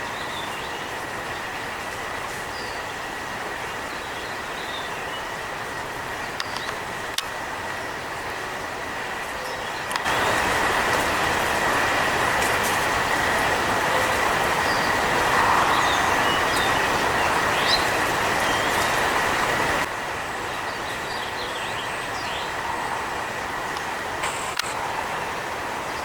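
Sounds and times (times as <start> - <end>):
thin steady whine: 0.0 - 26.0
rushing vehicle noise: 10.0 - 20.0, 21.9 - 26.0.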